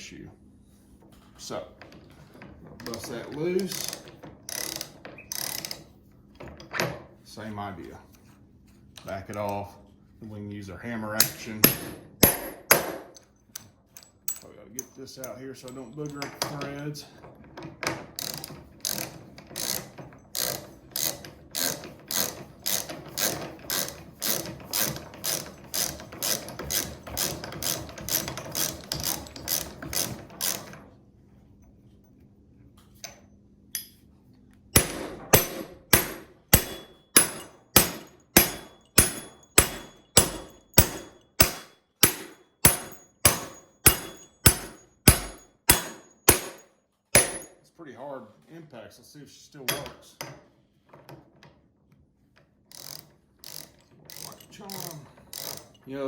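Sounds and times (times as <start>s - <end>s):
hammer striking metal bolt: 11.2s - 13.3s, 34.8s - 47.6s.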